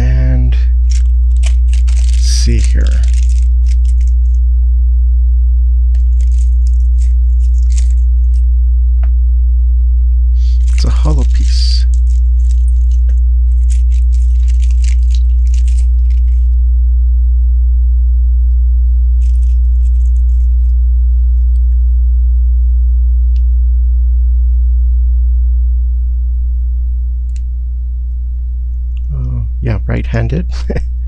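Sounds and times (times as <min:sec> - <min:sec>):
low electrical hum: 0:00.0 - 0:31.0
plastic pieces clicking and rustling: 0:00.8 - 0:04.4, 0:06.0 - 0:08.0, 0:10.6 - 0:16.4, 0:19.2 - 0:20.5.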